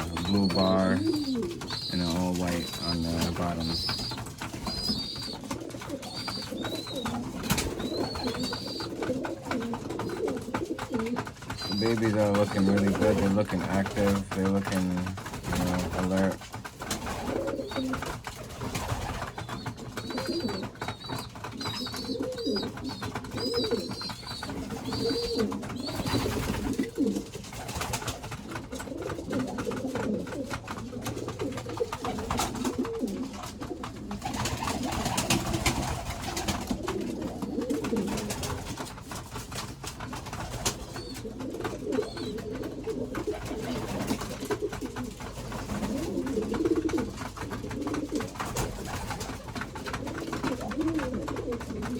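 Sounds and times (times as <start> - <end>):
pigeons cooing: 0.0 - 51.9.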